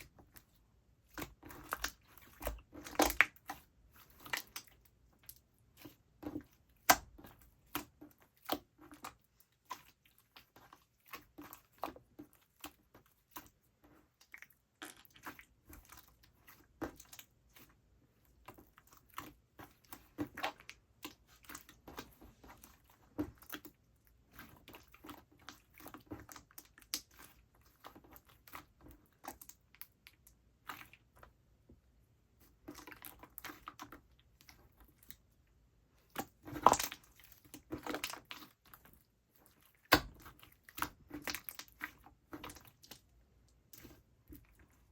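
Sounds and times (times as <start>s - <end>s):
slime squished by hand: 36.0s - 44.9s.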